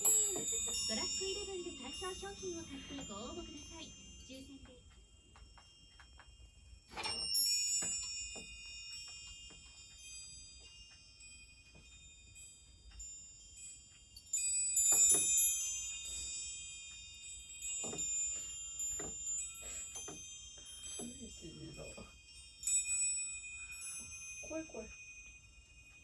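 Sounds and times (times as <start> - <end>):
metal chimes ringing: 0.0 - 26.0
faint soft knocks: 17.8 - 19.2.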